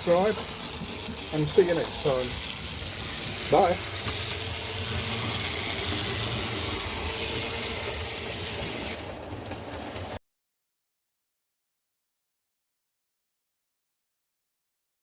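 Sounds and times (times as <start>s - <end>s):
model train motor hum: 0.0s - 10.1s
wheels rolling on rails: 0.0s - 10.2s.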